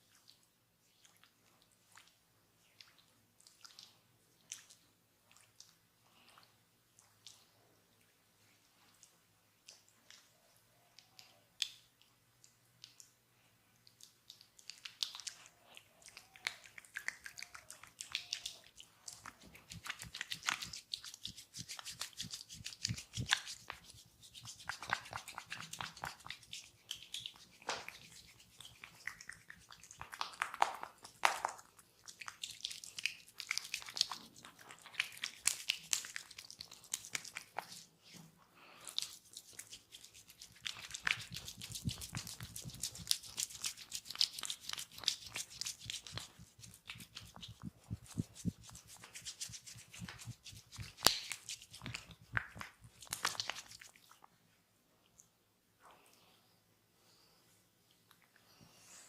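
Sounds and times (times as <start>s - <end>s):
fingers scratching through hair: 16.1s - 31.2s, 38.8s - 54.0s.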